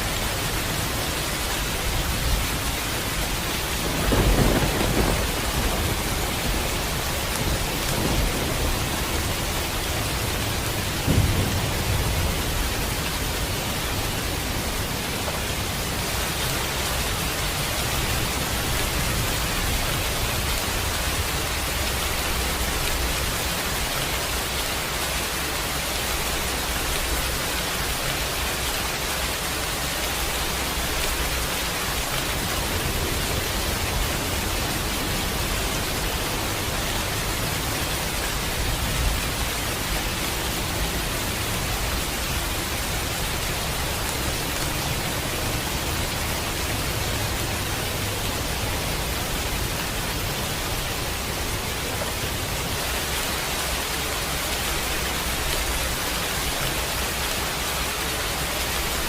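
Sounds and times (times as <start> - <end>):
steady rain: 0.0 - 59.0
low thunder rumble: 3.1 - 24.6.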